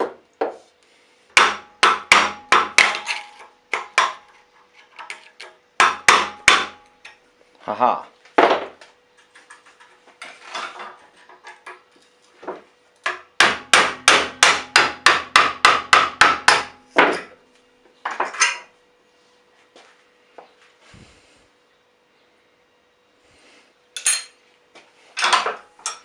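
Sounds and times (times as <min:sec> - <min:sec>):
hammer striking metal: 0:01.4 - 0:04.2, 0:05.8 - 0:06.9, 0:13.1 - 0:17.3.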